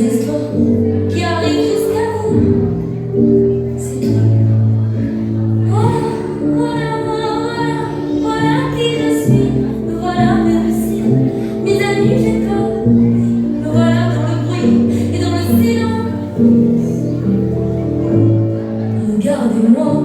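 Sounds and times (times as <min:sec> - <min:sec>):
woman singing: 0:00.0 - 0:03.0, 0:05.6 - 0:17.2, 0:18.9 - 0:20.0.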